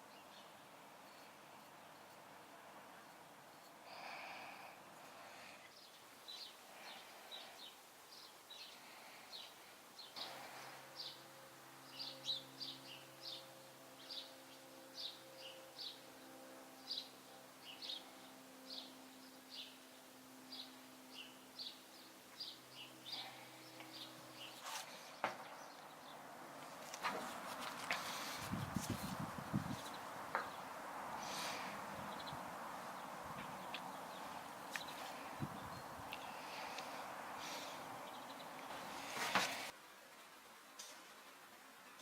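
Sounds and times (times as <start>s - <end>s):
small birds chirping: 3.0s - 16.0s, 20.5s - 26.3s, 27.0s - 39.7s.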